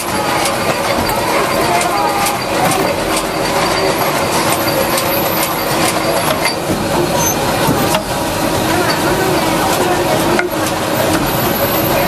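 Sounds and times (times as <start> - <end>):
high-pitched metallic squeals: 0.0 - 8.1
industrial machinery clattering: 0.0 - 12.0.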